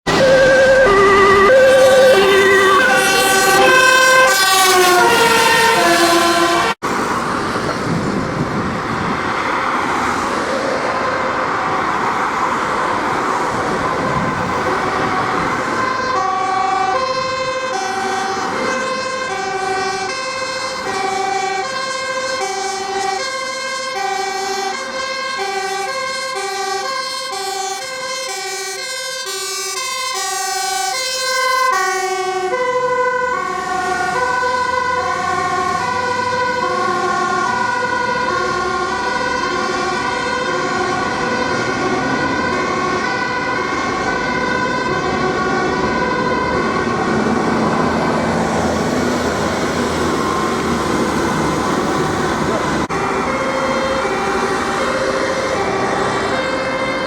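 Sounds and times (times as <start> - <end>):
two-tone fire engine siren: 0.0 - 57.0
vehicle engine rumble: 0.1 - 16.0.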